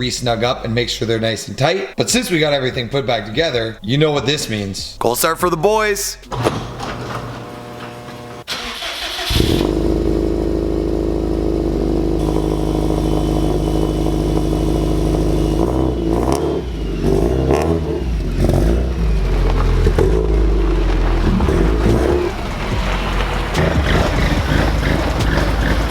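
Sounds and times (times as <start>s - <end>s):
car engine starting and idling: 2.2s - 25.9s.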